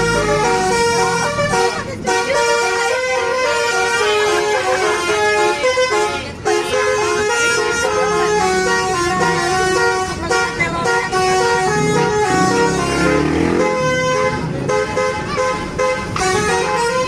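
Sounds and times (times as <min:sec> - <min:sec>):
bus horn playing a tune: 0:00.0 - 0:17.0.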